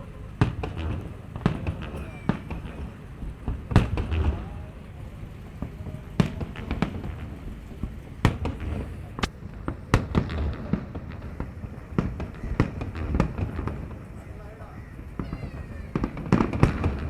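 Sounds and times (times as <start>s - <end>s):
low rumble of fireworks bursts: 0.0s - 17.0s
fireworks bangs and cracks: 0.3s - 14.2s, 15.2s - 17.0s.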